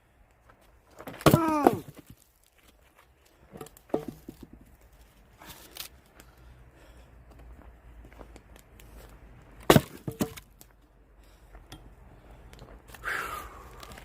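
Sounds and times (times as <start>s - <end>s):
axe striking log: 1.0s - 2.2s, 3.5s - 4.6s, 9.6s - 10.5s.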